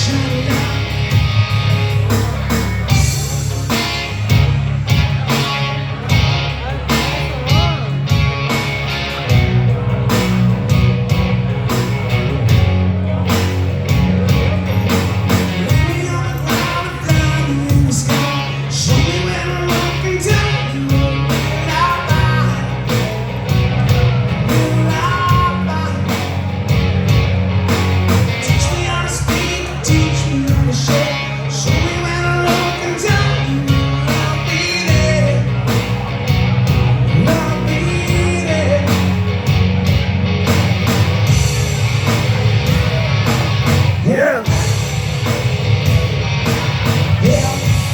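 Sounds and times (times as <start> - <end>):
person singing: 0.0 - 1.5, 14.7 - 26.4, 28.4 - 35.9, 37.1 - 39.2, 44.0 - 44.8, 47.2 - 47.9
live rock band playing: 0.0 - 47.9.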